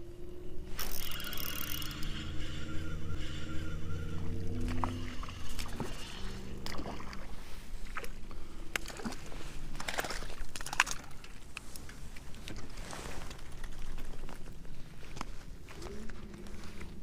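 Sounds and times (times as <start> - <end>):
steady hum with held tones: 0.0 - 9.0.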